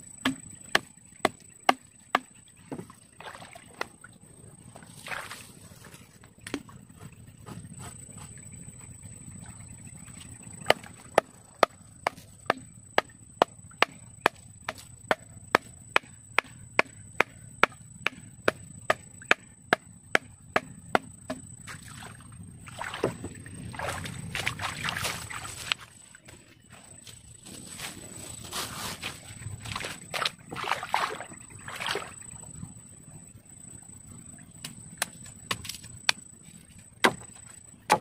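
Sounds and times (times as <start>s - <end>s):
blade chopping wood: 0.2s - 2.8s, 10.6s - 21.4s, 34.6s - 36.2s, 37.0s - 37.3s
rustling and scraping: 25.0s - 30.4s.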